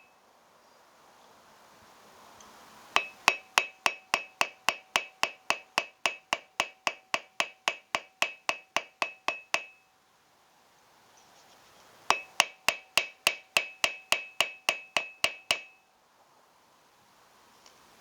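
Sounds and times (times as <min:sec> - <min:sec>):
hammer striking metal on anvil: 0:03.0 - 0:09.8, 0:12.1 - 0:15.8.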